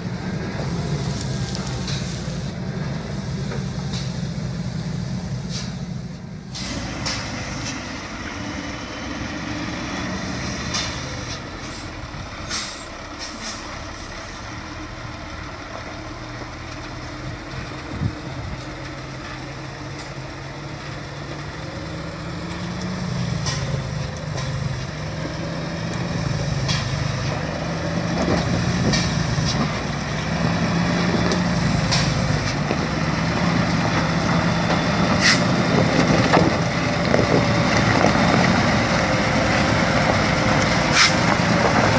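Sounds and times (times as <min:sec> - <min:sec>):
diesel truck engine running: 0:00.0 - 0:41.9
short sharp hisses: 0:00.7 - 0:07.3, 0:12.5 - 0:14.4, 0:35.2 - 0:35.5, 0:40.9 - 0:41.3.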